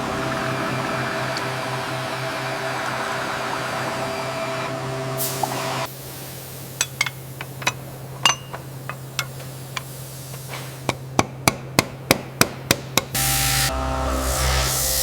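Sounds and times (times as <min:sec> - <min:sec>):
steady low hum: 0:13.2 - 0:15.0.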